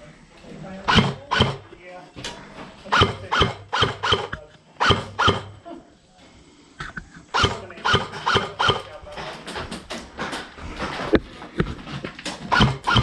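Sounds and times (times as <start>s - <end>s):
airsoft gun shots: 0.9s - 1.7s, 2.9s - 5.6s, 7.4s - 9.0s.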